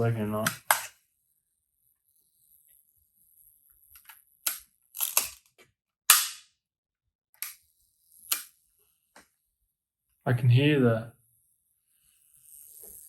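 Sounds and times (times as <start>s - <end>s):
camera mechanism clicking: 3.9s - 5.5s.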